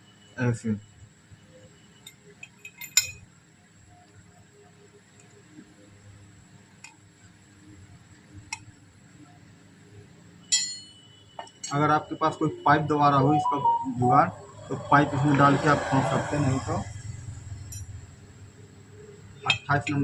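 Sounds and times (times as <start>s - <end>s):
light metallic clinks: 2.0s - 3.3s.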